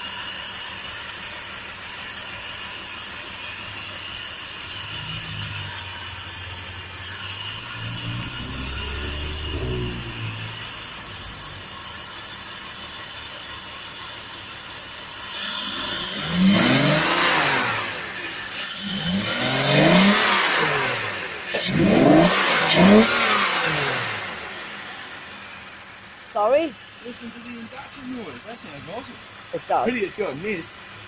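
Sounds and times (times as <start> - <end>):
car engine revving: 0.0 - 31.0.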